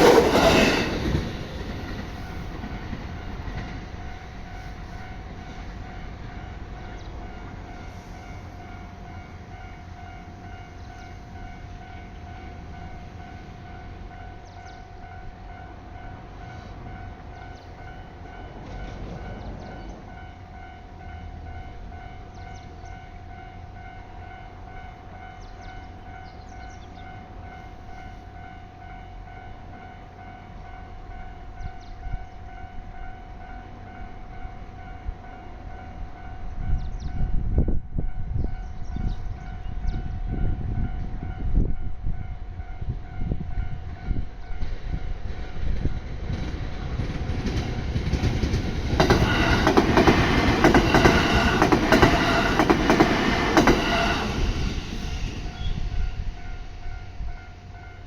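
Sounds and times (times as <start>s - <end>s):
train rumble and wheel clatter: 0.0s - 58.0s.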